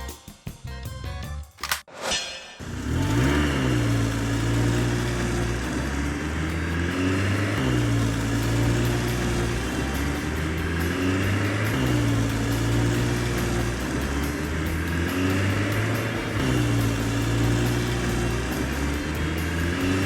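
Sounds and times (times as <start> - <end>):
music: 0.0 - 1.9, 2.9 - 20.0
quick whoosh: 1.9 - 3.0
vehicle engine revving: 2.6 - 20.0.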